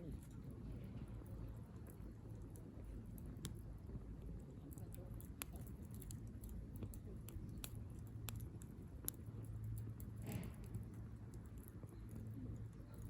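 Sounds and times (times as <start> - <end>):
wood fire crackling and popping: 1.2 - 13.0.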